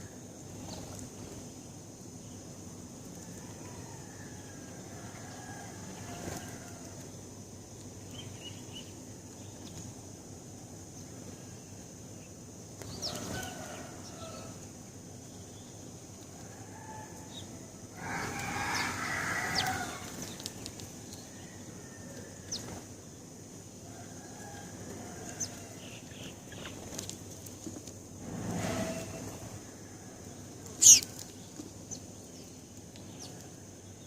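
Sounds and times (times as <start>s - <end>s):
sparrows chirping: 8.0s - 9.7s, 30.4s - 33.4s
harsh bird call: 30.8s - 31.1s.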